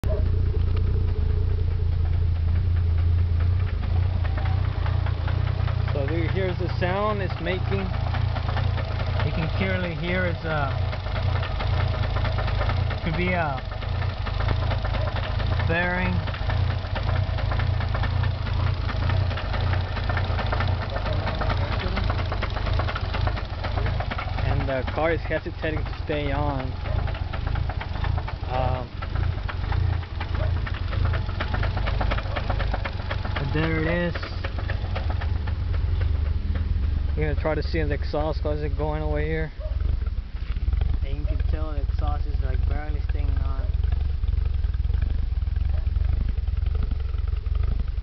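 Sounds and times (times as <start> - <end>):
car engine idling: 0.0 - 48.0
engine knocking tick: 0.0 - 48.0
man talking: 5.9 - 8.0, 9.2 - 10.9, 13.0 - 13.7, 15.6 - 16.3, 24.4 - 26.8, 28.5 - 28.9, 33.4 - 34.5, 37.2 - 39.5, 41.0 - 43.7.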